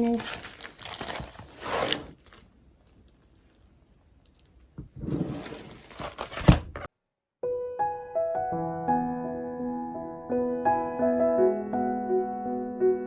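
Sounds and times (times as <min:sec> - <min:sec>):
packaging rustling: 0:00.0 - 0:04.6, 0:05.3 - 0:06.9.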